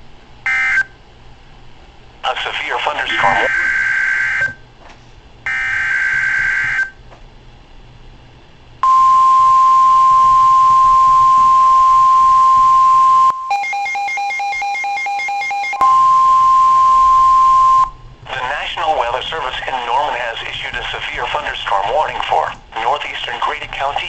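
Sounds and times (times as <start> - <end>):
rapid alternating electronic beeping: 2.9 - 4.0
steady single-pitch warning tone: 2.9 - 4.6, 8.8 - 18.1.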